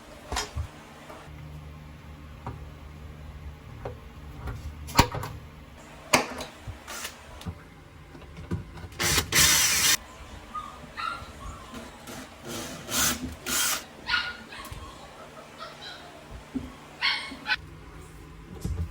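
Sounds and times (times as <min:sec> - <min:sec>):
cordless drill driving screws: 0:09.0 - 0:10.0, 0:12.5 - 0:13.8.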